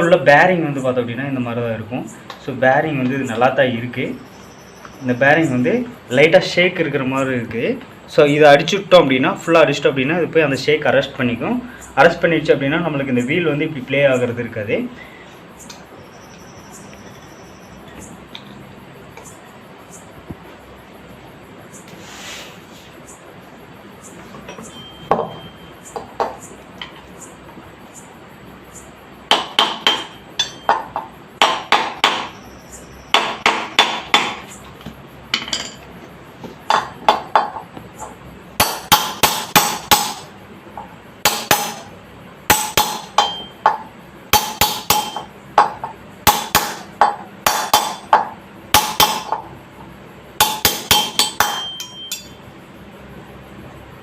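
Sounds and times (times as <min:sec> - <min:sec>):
hammer tapping on metal: 0:29.3 - 0:32.3, 0:33.1 - 0:34.4, 0:42.5 - 0:49.5, 0:50.4 - 0:52.4.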